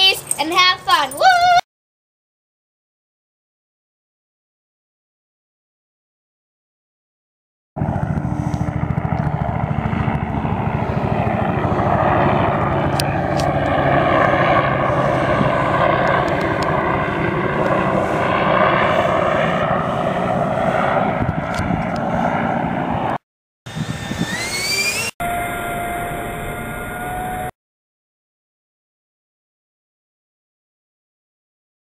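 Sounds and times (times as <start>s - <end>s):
high-pitched fan whine: 7.8s - 22.5s, 23.7s - 27.5s
electric ducted fan rushing: 7.8s - 23.1s, 23.7s - 27.5s.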